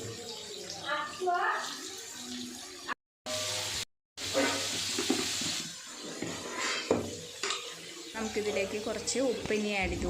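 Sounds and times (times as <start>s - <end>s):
onions sizzling in oil: 3.3s - 10.0s.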